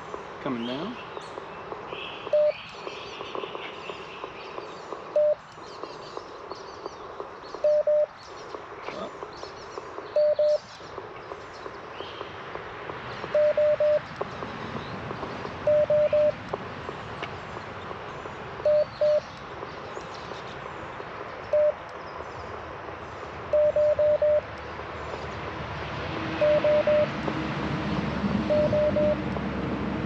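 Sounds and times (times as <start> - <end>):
receiver hiss: 0.0 - 29.4
short beeps: 2.3 - 2.6, 5.2 - 5.4, 10.2 - 10.6, 13.4 - 14.0, 15.7 - 16.4, 18.6 - 19.2, 21.5 - 21.8, 23.5 - 24.4, 26.4 - 27.1, 28.5 - 29.2.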